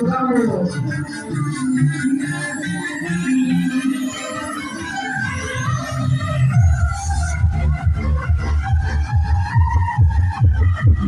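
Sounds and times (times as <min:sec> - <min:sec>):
loud electronic dance music: 0:00.0 - 0:11.0
heavy bass kick: 0:07.4 - 0:11.0.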